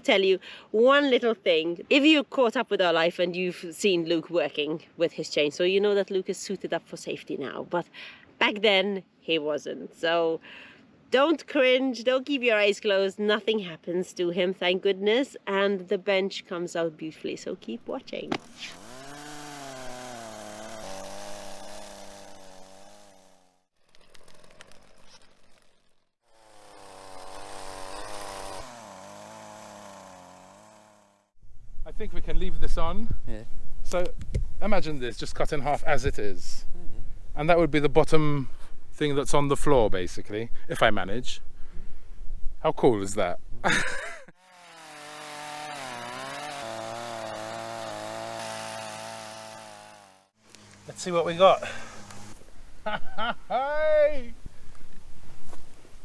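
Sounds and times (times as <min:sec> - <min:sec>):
chainsaw engine running: 0:18.3 - 0:31.3, 0:43.7 - 0:52.5
crackling clicks: 0:23.8 - 0:26.0.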